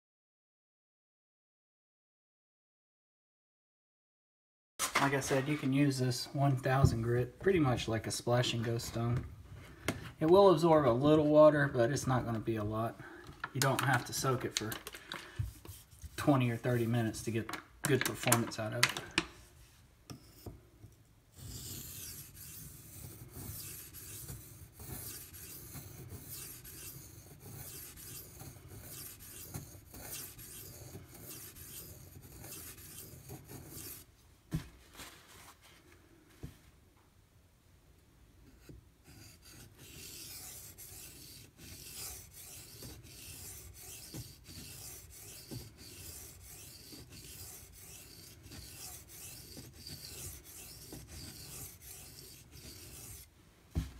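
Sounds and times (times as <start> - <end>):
knife scraping on whetstone: 21.4 - 34.1, 38.6 - 53.3.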